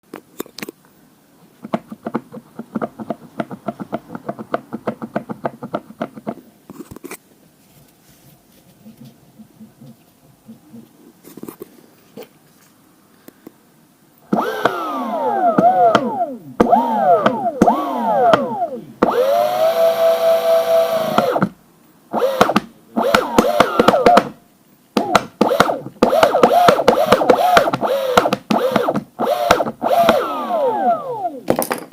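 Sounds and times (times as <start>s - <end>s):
electric motors whining: 14.3s - 21.5s, 22.1s - 24.4s, 25.1s - 31.4s.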